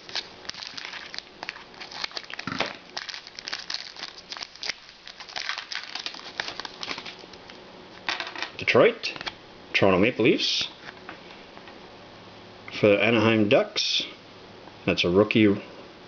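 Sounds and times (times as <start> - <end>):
trading cards rustling and clicking: 0.0 - 8.4.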